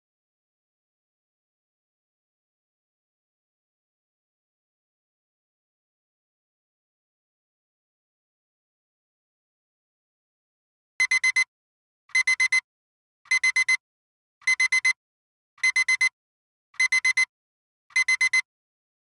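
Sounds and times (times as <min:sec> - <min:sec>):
digital timer alarm beeps: 0:11.0 - 0:11.5, 0:12.1 - 0:12.6, 0:13.3 - 0:13.8, 0:14.4 - 0:15.0, 0:15.6 - 0:16.2, 0:16.8 - 0:17.3, 0:17.9 - 0:18.5.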